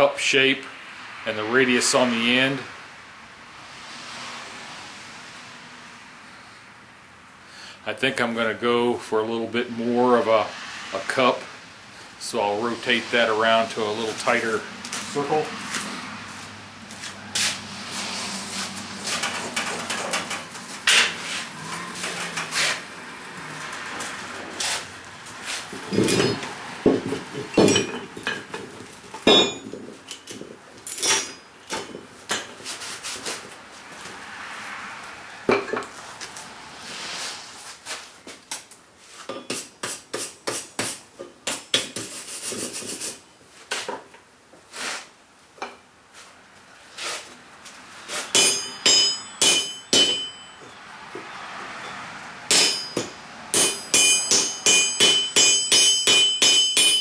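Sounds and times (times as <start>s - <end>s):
hammer striking hot steel: 48.3s - 50.5s, 52.5s - 57.0s
bright ringing hammer strikes: 48.3s - 50.7s, 52.5s - 57.0s.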